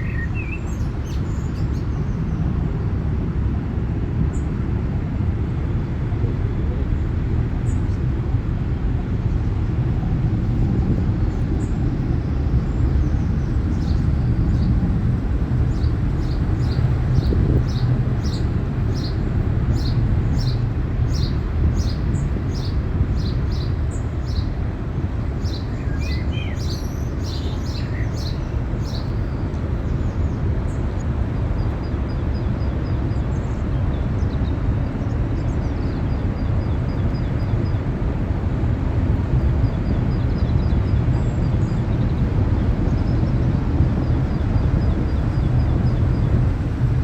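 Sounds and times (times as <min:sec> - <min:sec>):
small bird chirping: 0:00.0 - 0:02.2
steady low rumble: 0:00.0 - 0:47.0.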